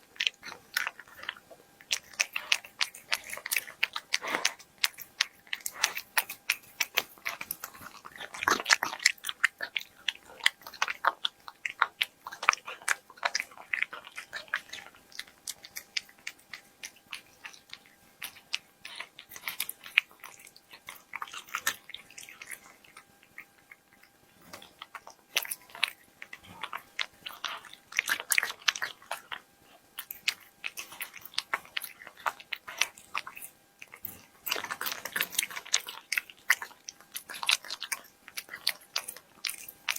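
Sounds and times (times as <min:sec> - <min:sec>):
cat chewing crunchy food: 0:00.0 - 0:39.9.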